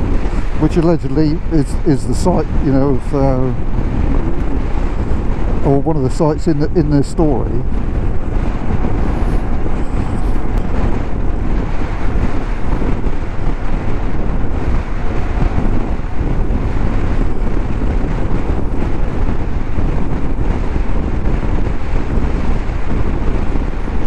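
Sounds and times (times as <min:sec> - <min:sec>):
road noise: 0:00.0 - 0:24.0
wind rush over microphone: 0:00.0 - 0:24.0
motorcycle engine: 0:07.1 - 0:24.0.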